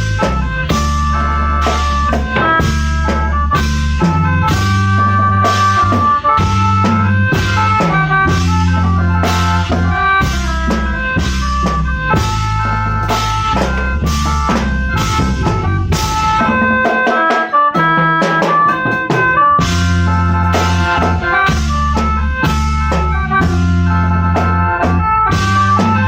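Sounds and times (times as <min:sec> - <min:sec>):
bass line: 0:00.0 - 0:26.0
drum kit beat: 0:00.0 - 0:26.0
reed organ tones: 0:00.0 - 0:26.0.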